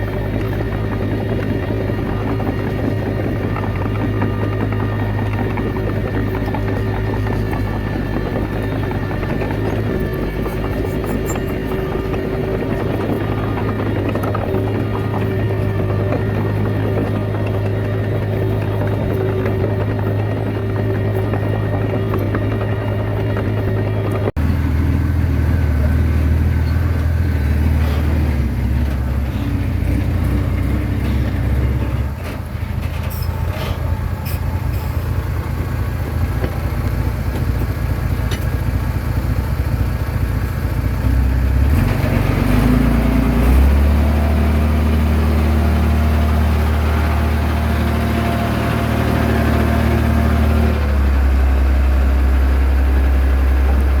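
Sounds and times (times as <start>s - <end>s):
bulldozer diesel engine drone: 0.0s - 54.0s.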